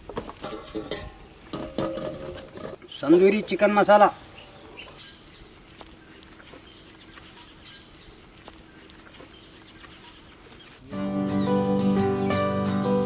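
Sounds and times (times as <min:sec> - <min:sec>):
faint outdoor background: 0:00.0 - 0:13.0
background music: 0:10.9 - 0:13.0.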